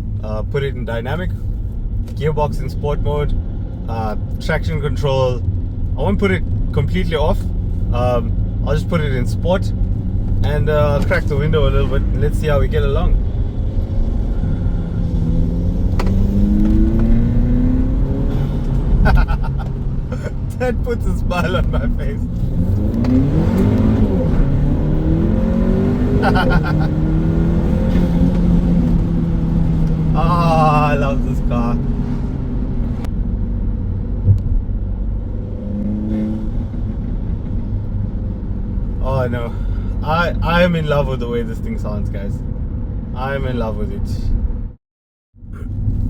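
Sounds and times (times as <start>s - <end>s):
car engine accelerating: 2.0s - 42.8s
short thump: 34.2s - 34.7s.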